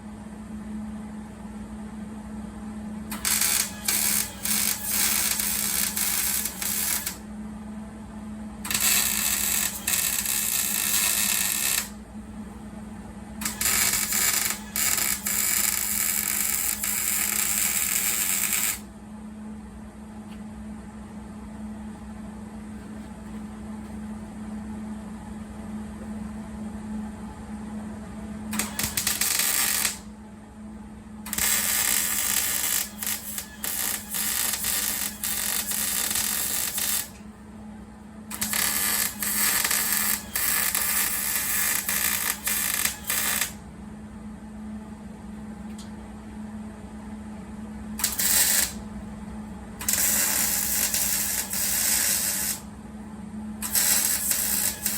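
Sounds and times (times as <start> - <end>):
steady low hum: 0.0 - 54.9
welding arc crackling: 3.1 - 7.2, 8.7 - 12.0, 13.4 - 18.9, 28.6 - 30.1, 31.3 - 37.2, 38.3 - 43.6, 48.0 - 48.8, 49.8 - 52.6, 53.6 - 54.9.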